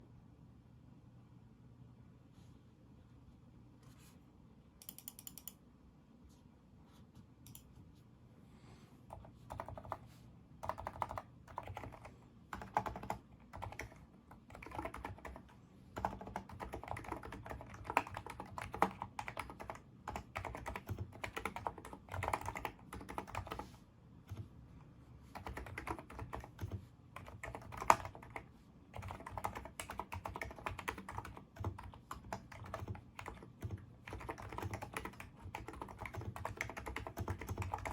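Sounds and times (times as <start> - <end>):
keyboard typing: 4.8 - 5.6, 9.1 - 10.0, 10.6 - 23.7, 25.3 - 37.9.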